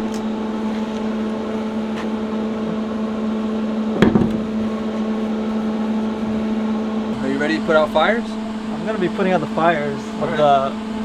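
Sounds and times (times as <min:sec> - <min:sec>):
steady machine hum: 0:00.0 - 0:11.0
short loud knock: 0:04.0 - 0:04.5.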